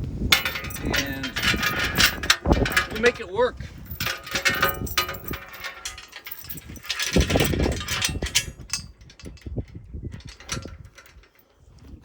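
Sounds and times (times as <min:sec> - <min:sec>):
chains clinking against metal: 0:00.3 - 0:09.4.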